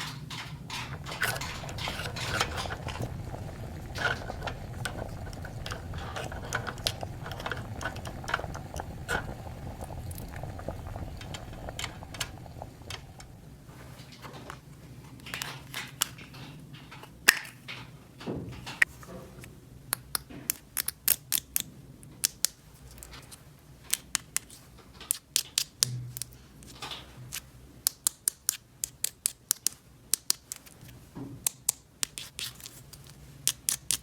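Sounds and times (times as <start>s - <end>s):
low steady hum: 0.0s - 14.9s.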